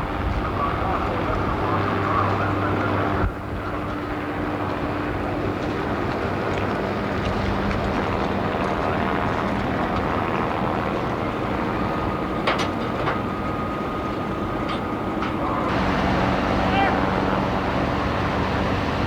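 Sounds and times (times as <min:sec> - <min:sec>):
helicopter engine and rotors: 0:00.0 - 0:19.0
thin whine: 0:15.6 - 0:19.0.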